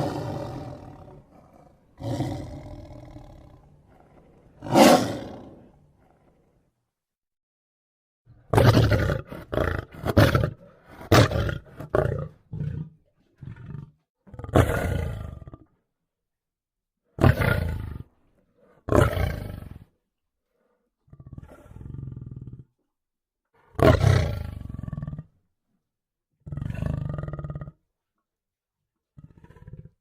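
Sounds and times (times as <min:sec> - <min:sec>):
lion roaring and snarling: 0:00.0 - 0:06.6, 0:08.5 - 0:15.7, 0:17.2 - 0:19.9, 0:21.1 - 0:22.6, 0:23.6 - 0:25.3, 0:26.5 - 0:27.8, 0:29.2 - 0:30.0.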